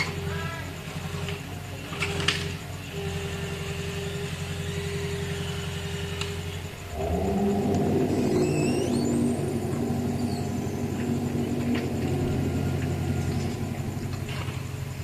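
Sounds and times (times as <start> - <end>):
engine running: 0.0 - 15.0
wavering pitched groan: 6.9 - 15.0.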